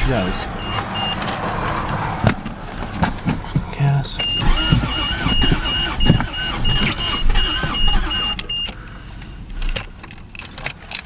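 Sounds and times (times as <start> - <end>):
dashboard warning chime beeping: 0.0 - 1.4, 3.8 - 9.5
car engine cranking: 0.0 - 11.0.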